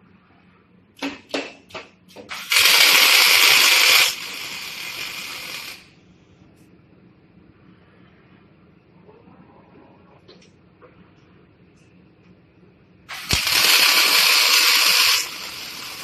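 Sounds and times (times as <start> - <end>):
welding machine hiss: 2.1 - 6.0, 13.1 - 16.0
welding machine clicks: 13.1 - 15.3.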